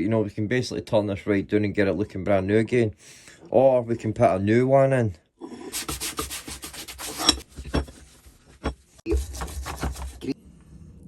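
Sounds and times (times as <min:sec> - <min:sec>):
hand scrubbing on metal: 0:05.6 - 0:10.4.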